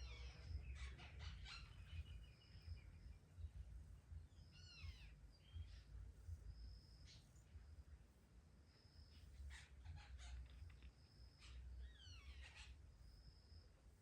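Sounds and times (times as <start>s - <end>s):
steady low rumble: 0.0s - 10.9s
faint bird chirps: 0.0s - 14.0s.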